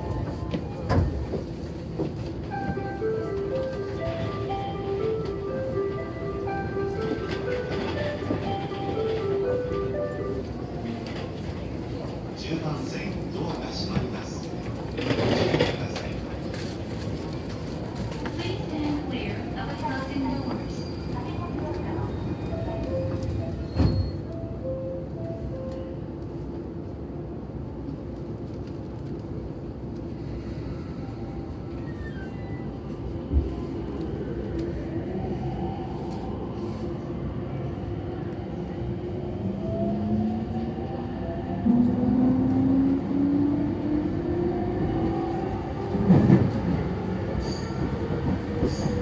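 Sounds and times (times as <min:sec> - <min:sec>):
electric train running rumble: 0:00.0 - 0:18.0.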